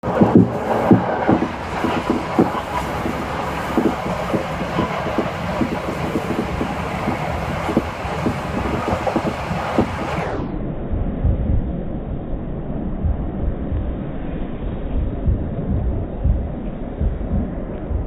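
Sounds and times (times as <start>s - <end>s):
wheels clicking on track: 0.0s - 10.2s
train running rumble: 0.0s - 10.6s.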